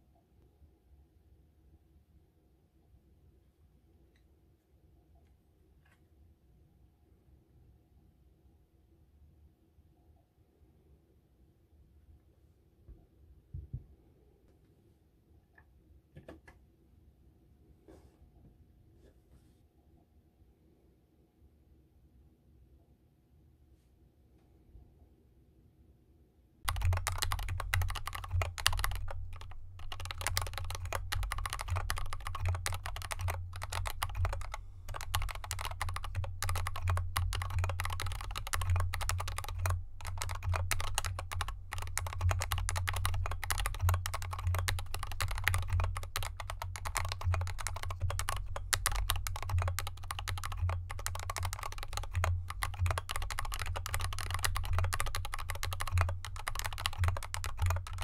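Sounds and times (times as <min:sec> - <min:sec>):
fast typing on mechanical keyboard: 0:26.7 - 0:58.0.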